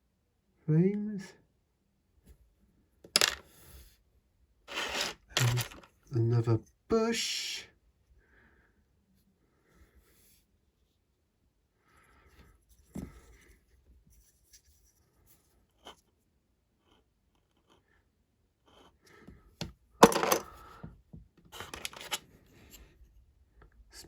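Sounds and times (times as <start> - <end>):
plastic toy bricks clattering: 3.1 - 3.4, 4.7 - 5.9, 20.0 - 20.6, 21.6 - 22.2.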